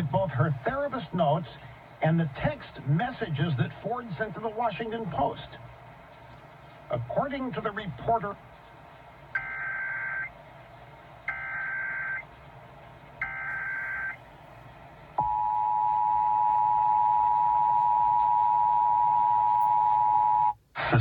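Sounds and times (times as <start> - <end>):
digital data tone bursts: 9.4 - 10.3, 11.3 - 12.2
two-tone attention signal: 15.2 - 20.6.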